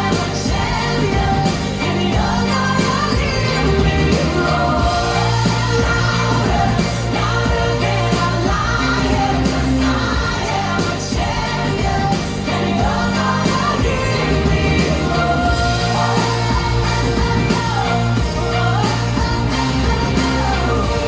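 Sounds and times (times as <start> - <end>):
pop song with singing: 0.0 - 21.0.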